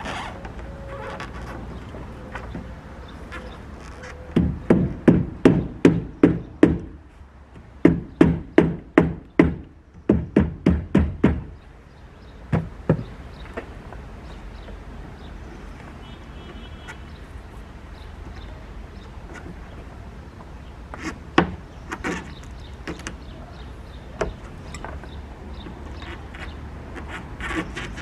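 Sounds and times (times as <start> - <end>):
low background noise: 0.0 - 28.0
hammering: 4.3 - 7.0, 7.6 - 11.6.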